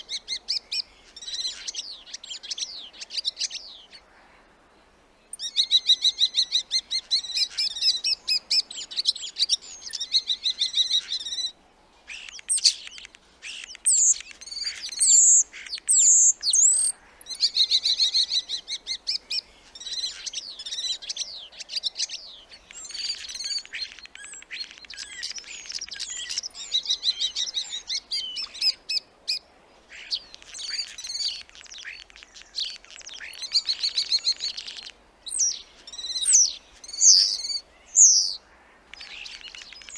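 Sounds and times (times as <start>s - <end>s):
starling singing: 30.0s - 39.9s.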